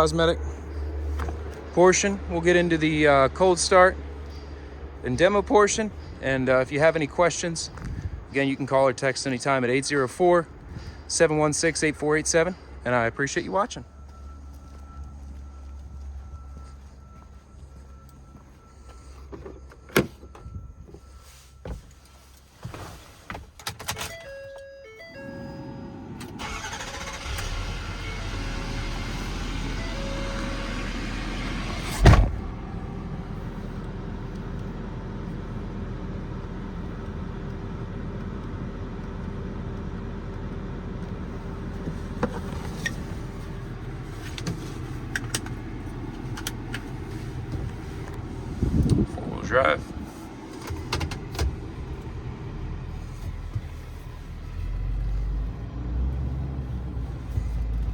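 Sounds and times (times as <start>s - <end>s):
diesel engine cranking and idling: 0.0s - 22.6s, 23.5s - 57.9s
dashboard warning chimes: 8.3s - 22.6s, 23.8s - 31.8s.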